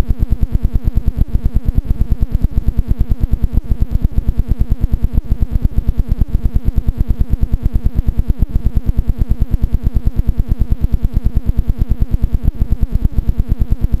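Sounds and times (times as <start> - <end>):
electronic buzzing pulses: 0.0 - 14.0.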